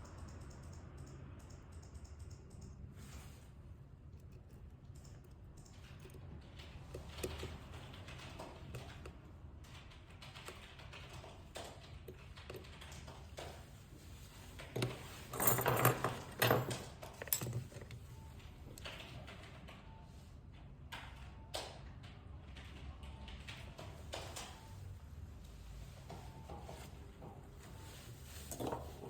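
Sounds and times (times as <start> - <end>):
tools clicking and tapping: 4.1 - 9.2, 14.6 - 18.0.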